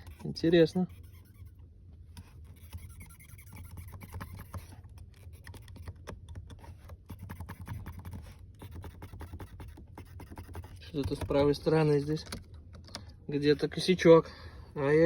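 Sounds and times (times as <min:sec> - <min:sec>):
low steady hum: 0:00.0 - 0:15.0
interior trim creaking and clicking: 0:03.9 - 0:08.4, 0:10.6 - 0:14.1.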